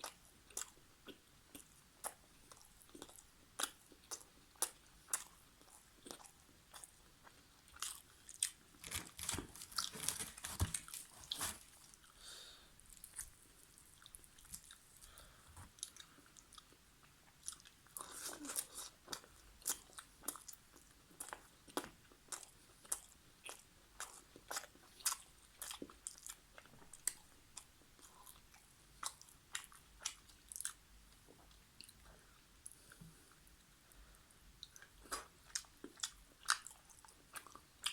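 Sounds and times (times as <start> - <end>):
person chewing and biting food: 0.0 - 12.2, 12.9 - 30.8.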